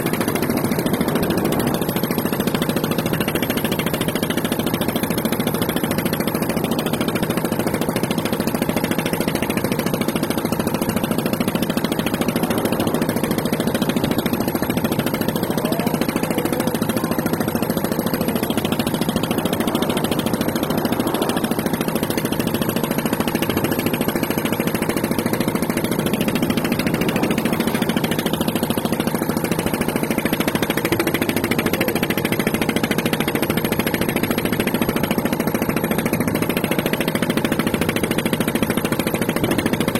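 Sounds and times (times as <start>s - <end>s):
motor running steadily: 0.0s - 39.9s.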